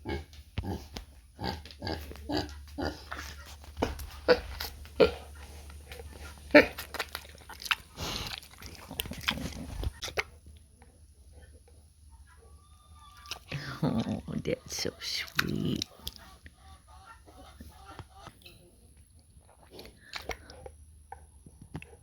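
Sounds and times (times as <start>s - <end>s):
pig grunting: 0.0s - 10.0s.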